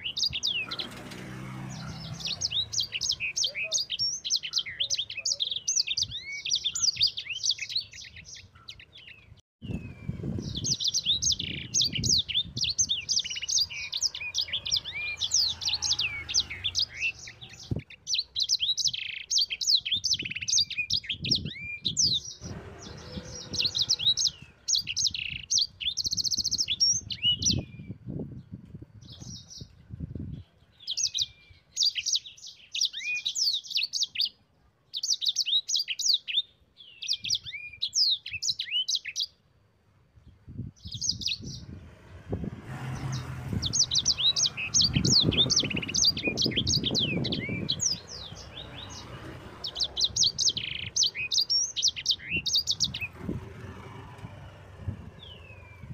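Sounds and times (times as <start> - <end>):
songbird chirps and trills: 0.0 - 55.9
low rumbling noise: 22.4 - 24.6, 41.4 - 51.0, 52.8 - 55.9.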